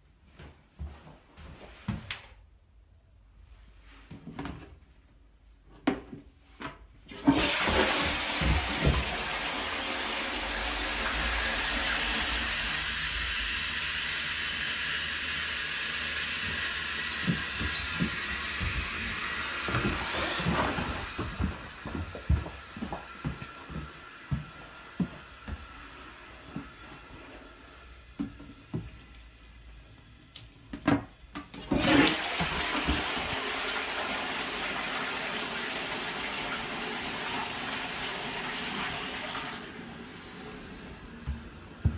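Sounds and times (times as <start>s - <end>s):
toilet flush water rushing: 7.1s - 28.1s, 31.6s - 41.9s.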